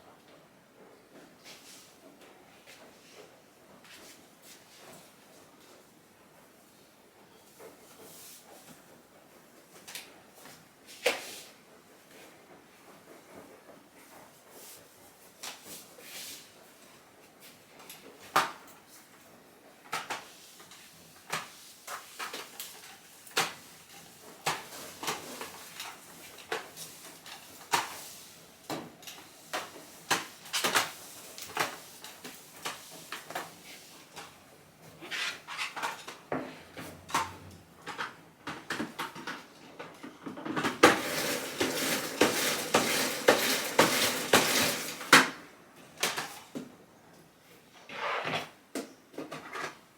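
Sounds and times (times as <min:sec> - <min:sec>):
clatter and scraping: 0:40.3 - 0:45.2.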